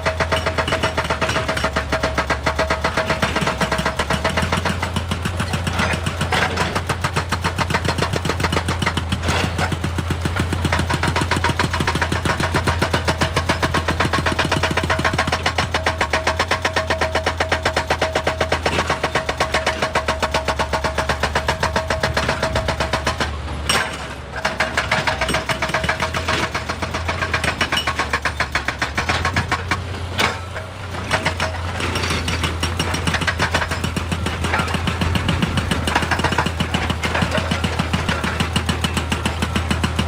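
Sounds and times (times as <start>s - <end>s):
rock breaker pounding rock: 0.0s - 40.0s
machine engine drone: 30.2s - 40.0s.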